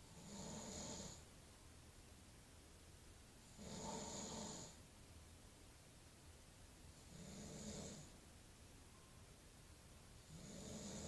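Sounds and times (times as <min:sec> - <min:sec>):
man snoring: 0:00.1 - 0:01.2, 0:03.6 - 0:04.8, 0:07.1 - 0:08.1, 0:10.3 - 0:11.0.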